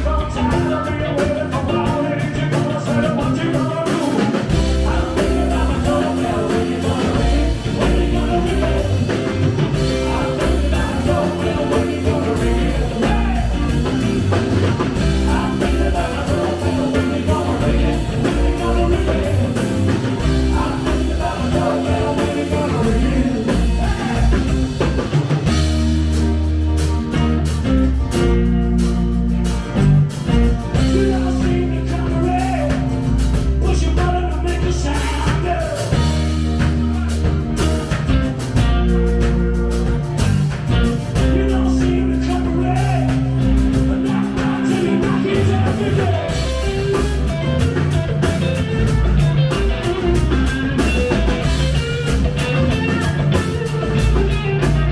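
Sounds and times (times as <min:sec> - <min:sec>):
person singing: 0:00.0 - 0:24.7, 0:41.2 - 0:47.0
drum kit: 0:00.0 - 0:54.9
electric guitar: 0:00.0 - 0:54.9
heavy bass notes: 0:00.0 - 0:54.9.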